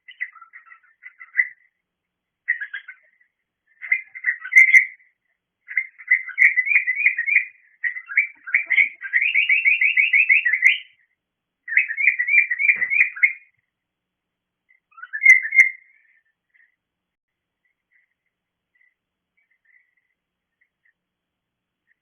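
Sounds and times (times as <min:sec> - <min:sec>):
cockatiel whistled chirps: 0:05.8 - 0:11.0, 0:11.7 - 0:13.5, 0:14.9 - 0:15.9.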